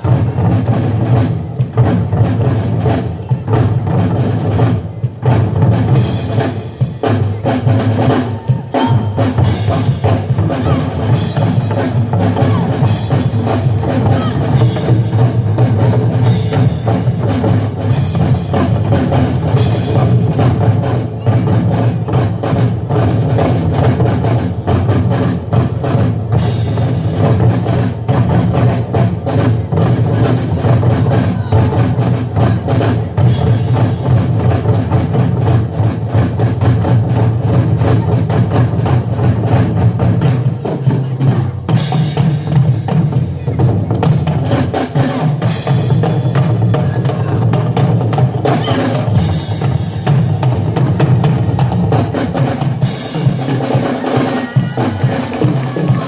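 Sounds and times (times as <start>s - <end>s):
loud music with drum beat: 0.0s - 56.0s.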